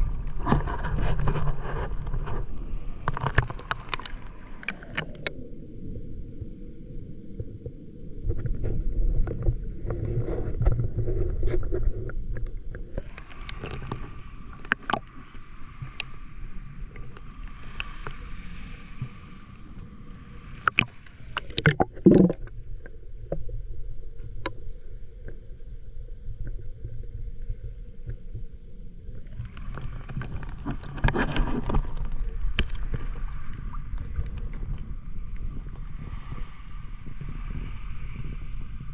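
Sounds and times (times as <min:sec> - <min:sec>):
underwater clicks and knocks: 0:00.0 - 0:05.4, 0:08.2 - 0:16.2, 0:20.6 - 0:23.5, 0:29.2 - 0:35.4
muffled rumble of moving water: 0:00.0 - 0:38.9
water splashing and hiss: 0:00.0 - 0:38.9.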